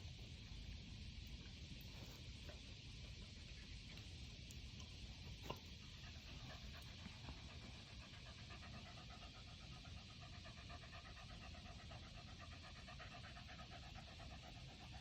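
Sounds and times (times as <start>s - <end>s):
dog panting: 5.2s - 15.0s.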